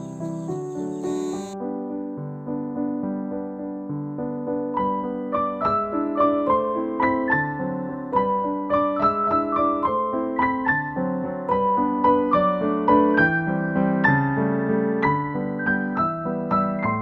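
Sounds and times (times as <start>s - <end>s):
gentle piano music: 0.0s - 17.0s.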